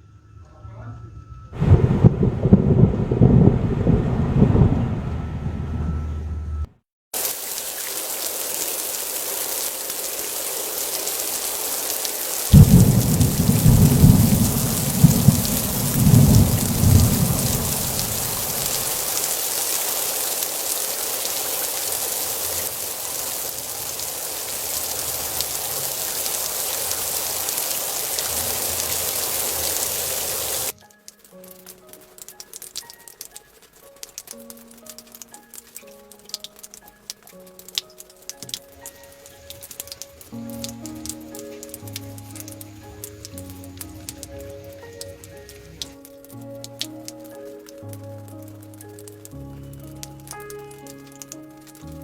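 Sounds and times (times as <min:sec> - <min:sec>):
thunderclap and rolling rumble: 0:01.1 - 0:06.7, 0:12.5 - 0:19.0
heavy rain: 0:01.6 - 0:06.4, 0:07.2 - 0:52.0.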